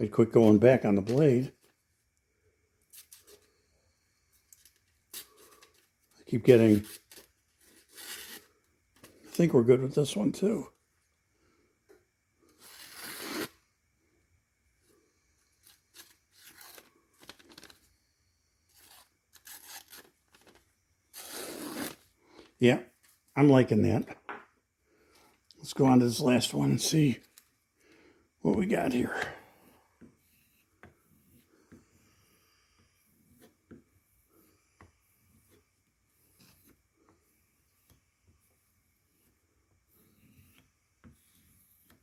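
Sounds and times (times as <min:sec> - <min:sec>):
knife slicing paper: 0:12.6 - 0:13.6, 0:18.7 - 0:20.2.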